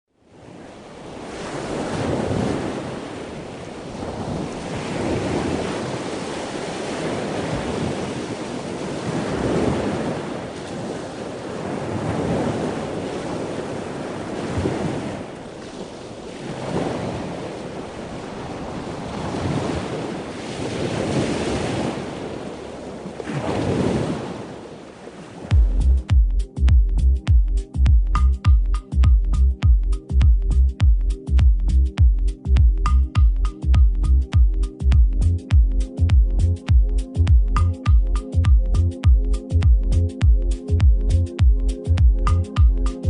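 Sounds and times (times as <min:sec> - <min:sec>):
waves breaking on shore: 0:00.2 - 0:25.8
wind buffeting microphone: 0:00.4 - 0:26.0.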